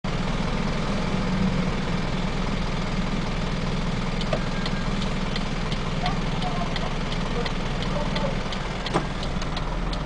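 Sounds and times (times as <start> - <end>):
truck engine idling: 0.1 - 10.0.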